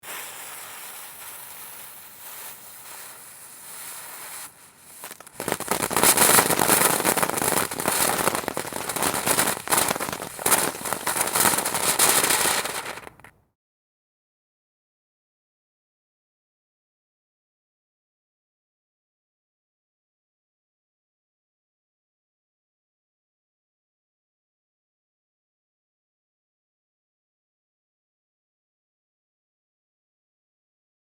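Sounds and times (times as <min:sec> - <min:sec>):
firework crackling: 0:00.0 - 0:13.3
firework fountain hissing: 0:00.0 - 0:13.3.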